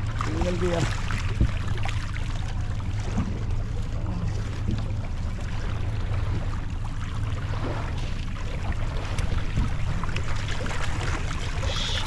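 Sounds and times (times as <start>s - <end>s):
boat motor humming: 0.0s - 12.0s
water noise: 0.0s - 12.0s.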